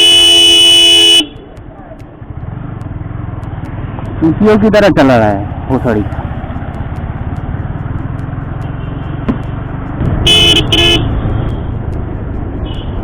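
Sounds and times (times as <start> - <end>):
vehicle horn beeping: 0.0 - 1.4, 10.2 - 11.6
motorcycle engine running: 0.0 - 13.0
road noise: 0.0 - 13.0.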